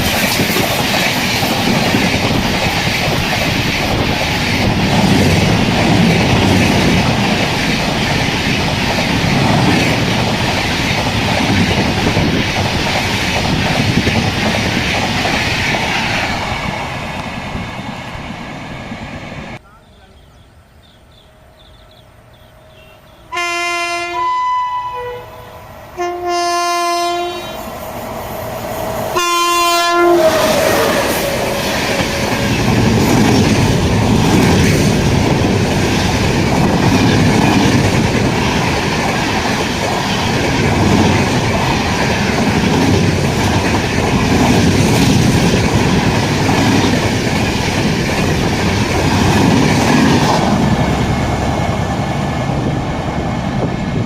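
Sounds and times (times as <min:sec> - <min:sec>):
train clattering on rails: 0:00.0 - 0:19.0, 0:29.0 - 0:54.0
locomotive horn blasts: 0:22.7 - 0:27.6, 0:29.2 - 0:31.0.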